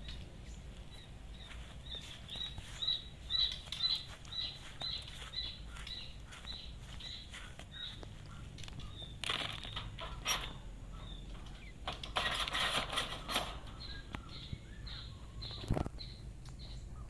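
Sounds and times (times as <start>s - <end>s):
quail chicks peeping: 0.0s - 17.0s.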